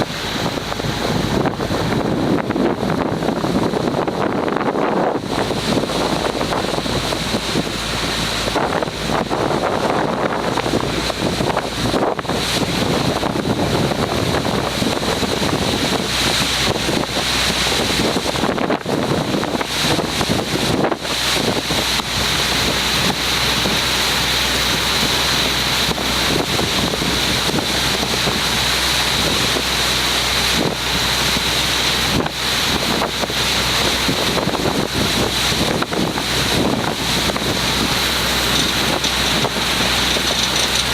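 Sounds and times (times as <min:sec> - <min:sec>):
boat engine hum: 0:00.0 - 0:40.9
water rushing past hull: 0:00.0 - 0:40.9
wind buffeting microphone: 0:00.0 - 0:40.9.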